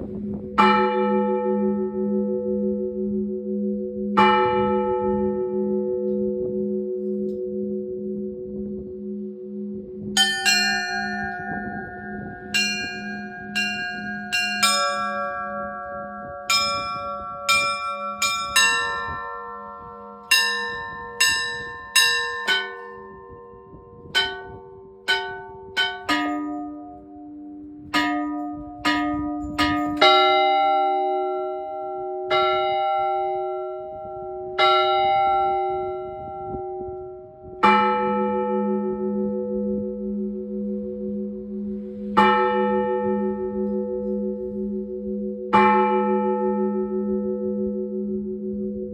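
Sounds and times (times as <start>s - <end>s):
deep bell struck: 0.0s - 48.9s
larger church bells ringing: 0.0s - 48.9s
small church bells quick strikes: 0.0s - 48.9s.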